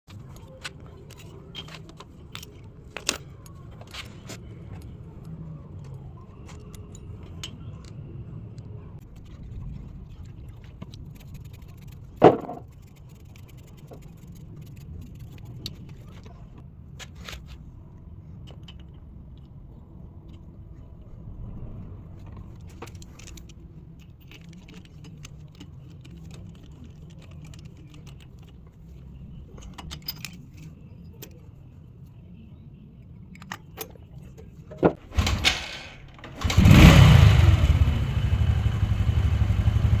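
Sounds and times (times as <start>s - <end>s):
metal tools clinking: 0.5s - 4.9s, 29.4s - 31.4s.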